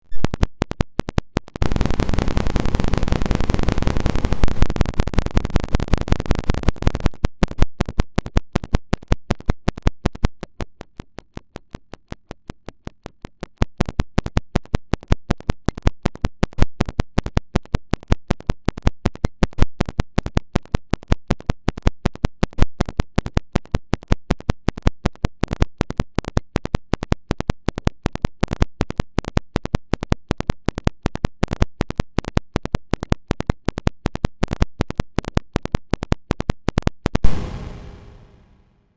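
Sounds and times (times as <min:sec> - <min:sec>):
harsh noise: 0:37.2 - 0:38.8.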